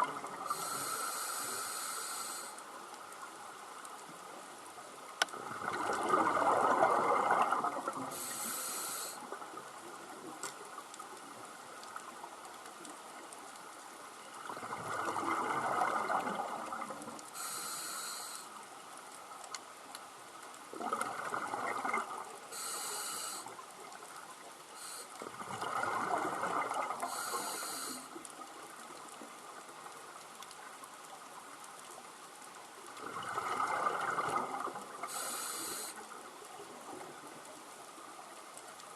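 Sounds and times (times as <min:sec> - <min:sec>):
regulator hissing inhale: 0:00.5 - 0:02.7, 0:08.1 - 0:09.3, 0:17.3 - 0:18.6, 0:22.5 - 0:23.6, 0:24.8 - 0:25.2, 0:27.0 - 0:28.2, 0:35.0 - 0:36.0
bubbling underwater exhale: 0:05.4 - 0:08.6, 0:14.4 - 0:17.0, 0:25.3 - 0:28.1, 0:33.0 - 0:35.9.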